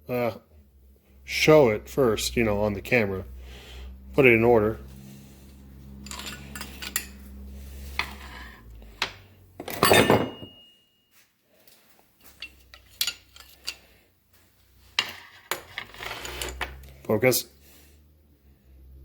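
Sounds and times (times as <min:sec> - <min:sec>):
metal rods clinking: 0:06.0 - 0:07.2, 0:09.6 - 0:10.8, 0:12.2 - 0:13.9, 0:15.0 - 0:16.9
metal clatter with ringing tone: 0:09.7 - 0:10.9.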